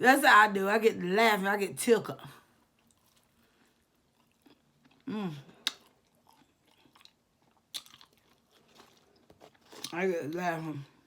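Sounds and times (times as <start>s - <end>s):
person chewing fried chicken: 2.6s - 10.0s.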